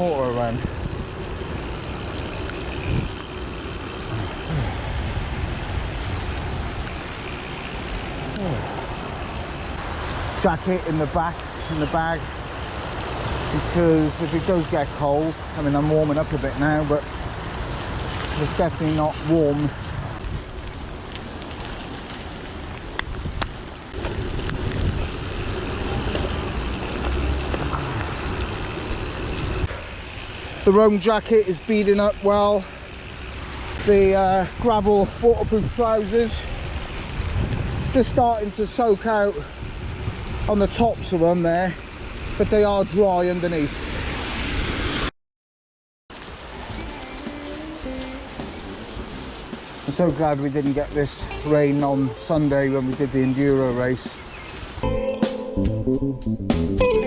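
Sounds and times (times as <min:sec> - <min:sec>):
wind buffeting microphone: 0:00.0 - 0:30.4, 0:33.8 - 0:41.2
rain hissing: 0:00.0 - 0:30.7, 0:32.6 - 0:38.5, 0:46.1 - 0:54.8
bike tyres rumbling on wet gravel: 0:00.0 - 0:45.0, 0:46.1 - 0:54.8.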